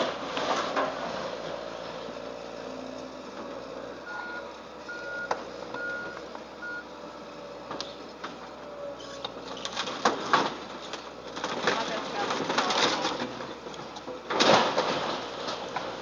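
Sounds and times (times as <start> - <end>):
reversing alarm beeping: 4.0 - 6.9.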